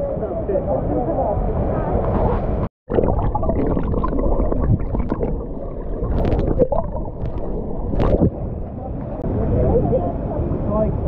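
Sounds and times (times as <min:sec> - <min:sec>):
muffled churning water: 0:00.2 - 0:11.0
water splashes: 0:01.9 - 0:09.2.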